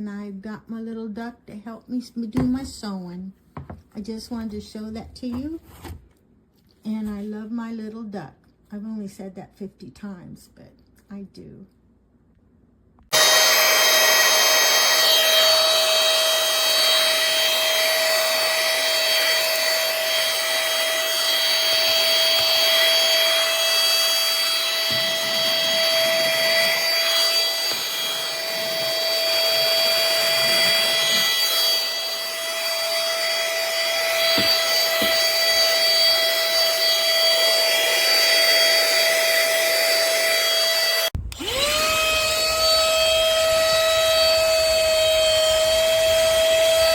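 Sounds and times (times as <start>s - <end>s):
handheld vacuum motor whine: 13.1s - 46.9s.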